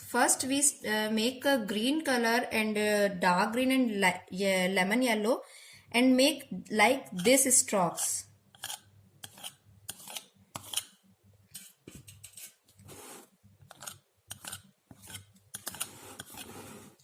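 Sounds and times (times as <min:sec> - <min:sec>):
painting knife scraping paint: 0:07.1 - 0:17.0.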